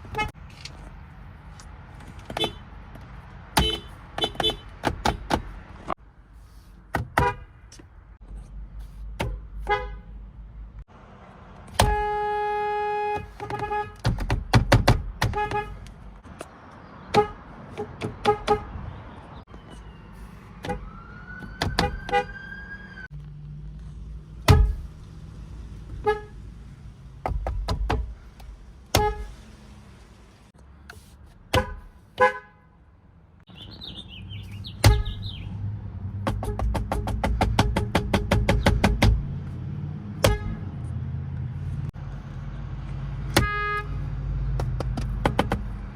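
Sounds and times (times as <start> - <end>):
car horn honking: 0.0 - 0.4, 2.3 - 2.7, 3.6 - 4.8, 7.2 - 7.6, 9.6 - 10.1, 11.7 - 14.1, 15.2 - 15.9, 17.1 - 18.8, 21.8 - 22.4, 25.9 - 26.5, 28.9 - 29.4, 31.5 - 32.8, 40.2 - 40.8, 43.3 - 44.1.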